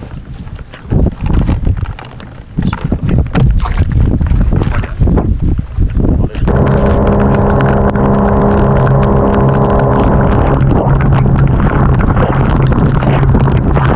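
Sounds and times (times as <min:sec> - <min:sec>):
wind noise on microphone: 0:00.0 - 0:13.9
motor running: 0:06.5 - 0:13.9.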